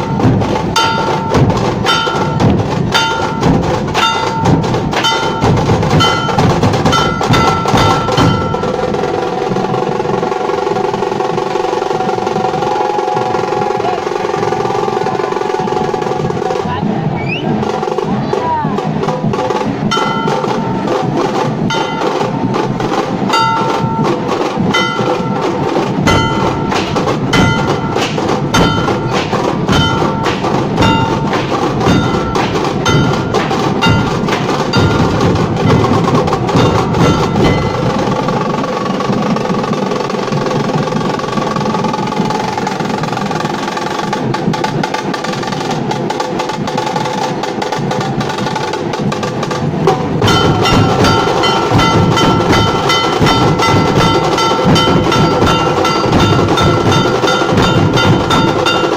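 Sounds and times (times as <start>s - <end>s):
ringing metallic stroke: 0.0s - 8.8s
dhol drumming: 0.0s - 58.9s.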